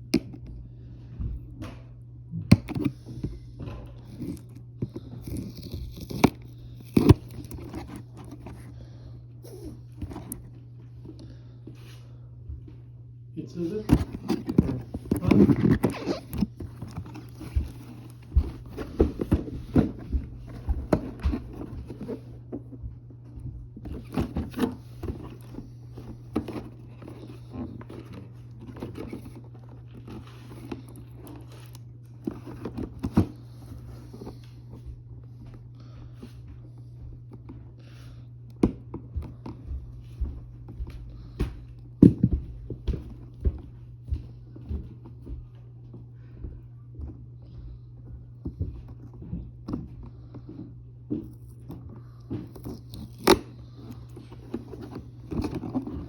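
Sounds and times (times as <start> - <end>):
cardboard and plastic crinkling: 2.5 - 11.4, 13.4 - 35.1, 48.5 - 56.0.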